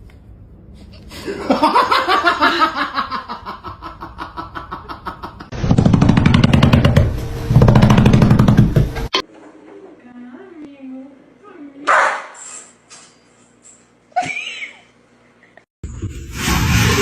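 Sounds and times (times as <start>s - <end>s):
rhythmic laughter: 1.2s - 5.5s.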